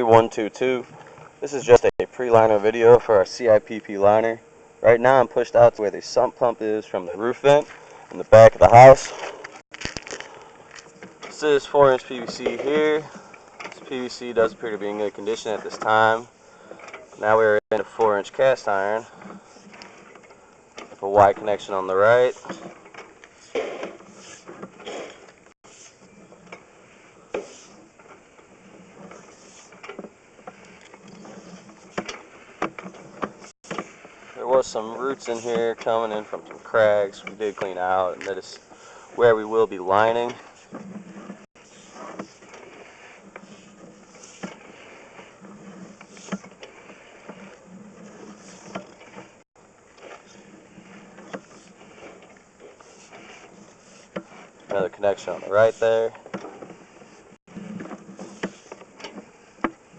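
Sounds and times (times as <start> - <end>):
low steady background noise: 0.0 - 59.9.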